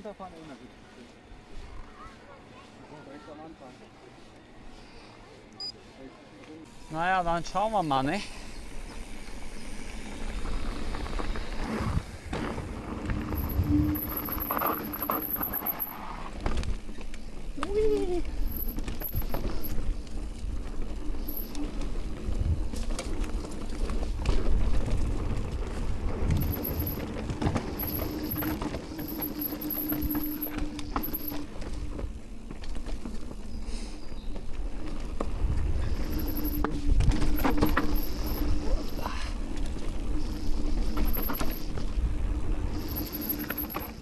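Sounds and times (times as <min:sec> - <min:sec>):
tyre noise on dirt: 0:06.7 - 0:44.0
low wind rumble: 0:08.3 - 0:43.6
bike knocks and rattles: 0:18.4 - 0:33.4, 0:34.3 - 0:38.4, 0:40.9 - 0:42.0.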